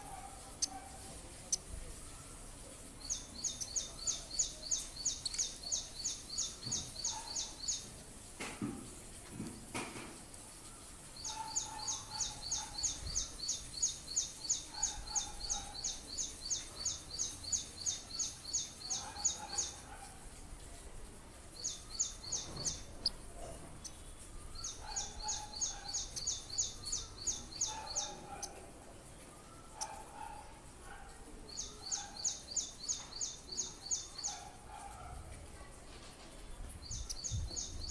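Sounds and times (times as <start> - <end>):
small bird chirping: 0.4 - 1.7, 2.8 - 7.9, 11.2 - 19.8, 21.5 - 23.2, 23.8 - 28.6, 36.6 - 37.9.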